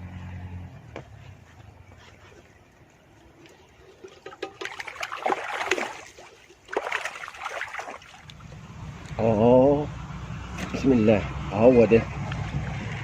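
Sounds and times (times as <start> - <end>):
water splashing: 3.1 - 8.6.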